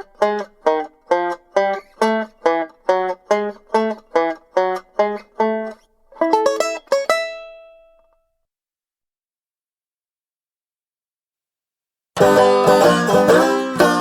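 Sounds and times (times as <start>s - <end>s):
banjo playing: 0.0s - 8.2s, 12.2s - 14.0s.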